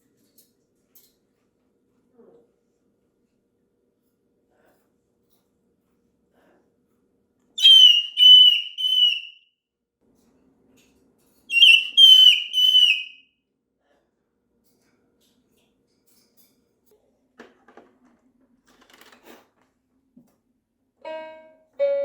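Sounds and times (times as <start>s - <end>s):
cockatoo screaming: 7.6s - 9.3s, 11.5s - 13.1s.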